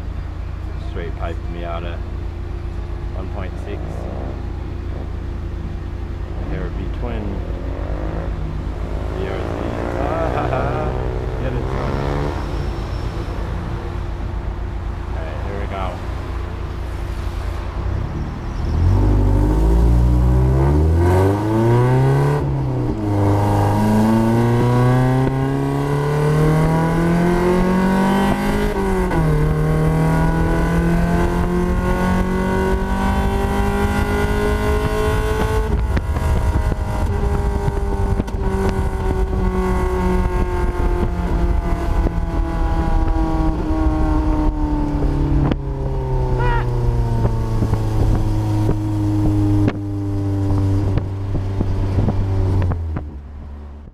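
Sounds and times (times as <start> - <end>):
car engine accelerating through gears: 6.3 - 14.1, 16.8 - 53.9.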